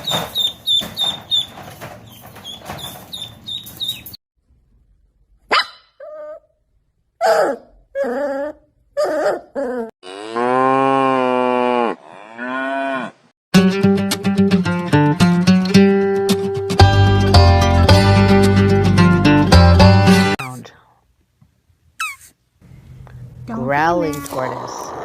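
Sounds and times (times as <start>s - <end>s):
dog barking: 5.5s - 6.0s
cow mooing: 10.0s - 13.2s.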